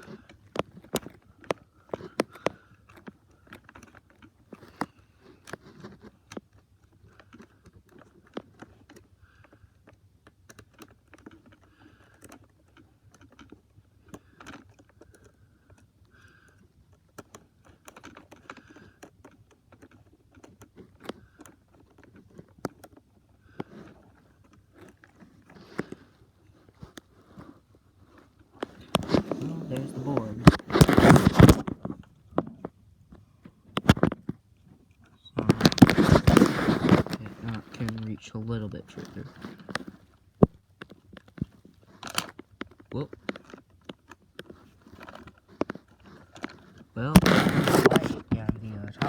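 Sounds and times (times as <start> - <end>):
plastic pieces clicking and scraping: 17.1 - 32.8, 33.7 - 49.0.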